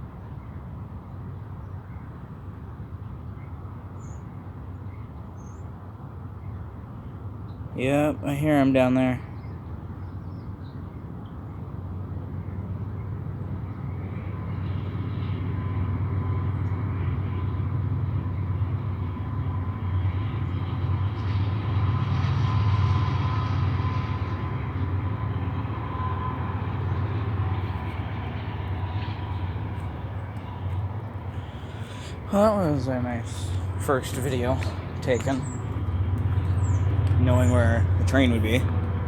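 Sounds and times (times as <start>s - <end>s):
rumble of rolling train cars: 2.8s - 39.0s
locomotive engine drone: 13.1s - 39.0s
thin steady whine: 19.1s - 39.0s.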